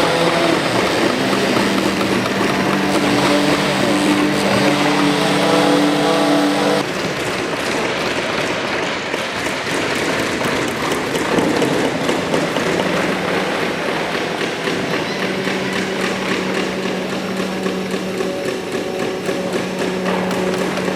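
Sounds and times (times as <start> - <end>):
power tool motor whine: 0.0 - 6.9, 11.5 - 20.9.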